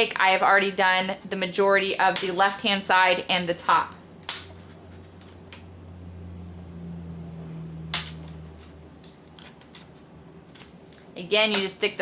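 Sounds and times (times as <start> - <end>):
low hum: 3.9 - 11.1
plastic clips snapping loose: 4.2 - 4.5.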